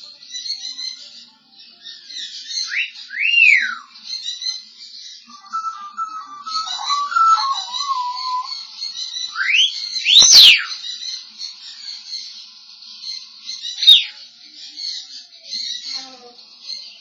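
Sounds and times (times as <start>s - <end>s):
parrot whistling: 5.3s - 8.6s, 9.4s - 10.7s.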